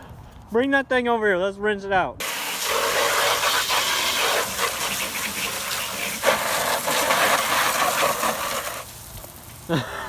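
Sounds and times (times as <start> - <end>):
water spraying and splashing: 2.2 - 9.8.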